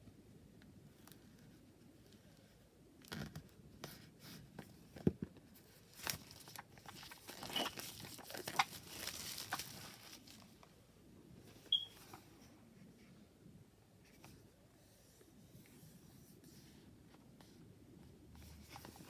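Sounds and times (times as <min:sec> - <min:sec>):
wrapping crinkling and tearing: 0:05.9 - 0:10.6.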